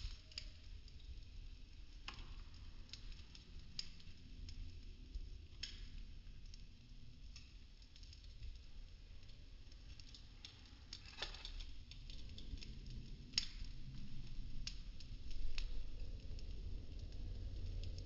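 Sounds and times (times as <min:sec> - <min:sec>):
wood fire crackling and popping: 0:00.0 - 0:18.0
low rumble: 0:11.9 - 0:18.0.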